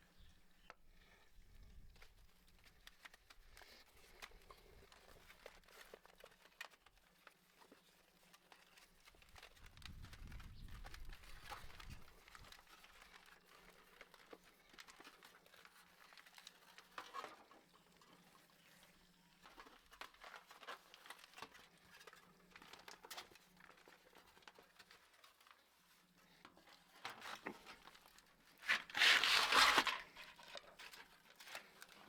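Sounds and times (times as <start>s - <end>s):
small clicks and crackles: 0.0s - 32.0s
rustle: 27.0s - 32.0s.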